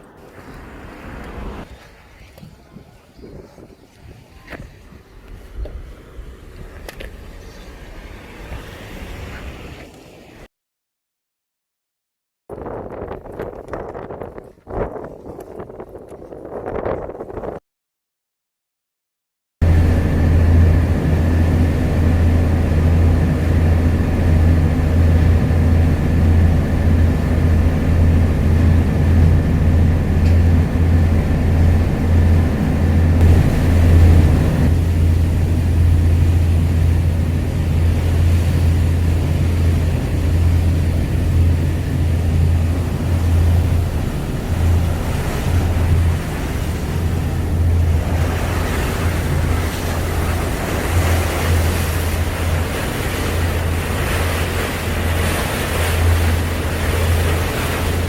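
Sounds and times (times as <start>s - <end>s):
vehicle engine drone: 19.6s - 58.0s.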